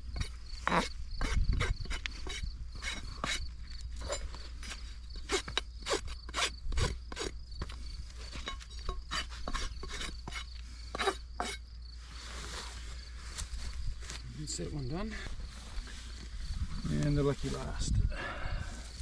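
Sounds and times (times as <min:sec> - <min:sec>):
rasp scraping hoof: 0:00.0 - 0:12.9.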